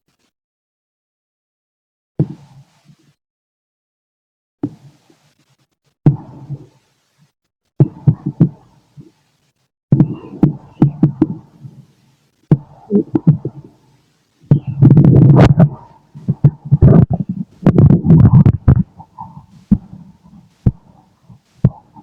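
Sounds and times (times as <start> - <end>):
stomach gurgling: 7.8 - 9.1, 10.0 - 11.9, 12.5 - 13.8, 14.5 - 22.0.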